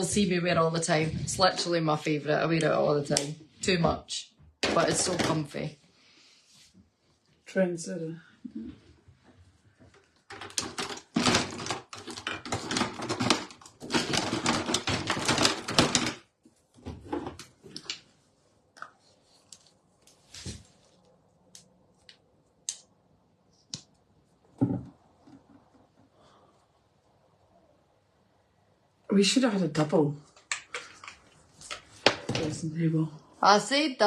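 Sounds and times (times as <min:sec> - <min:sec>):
small objects clattering: 0:09.9 - 0:16.3.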